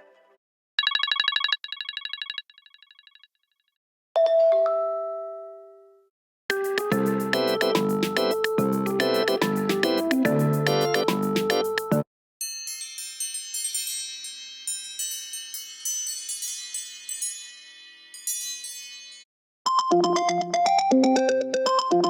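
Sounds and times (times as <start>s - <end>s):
lower ringtone melody: 6.5s - 12.0s
bell-like chime ringtone: 9.0s - 22.0s.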